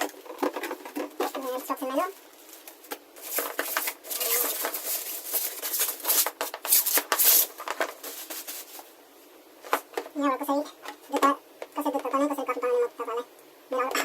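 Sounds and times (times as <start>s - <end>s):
packaging rustling and scraping: 0.0s - 9.0s.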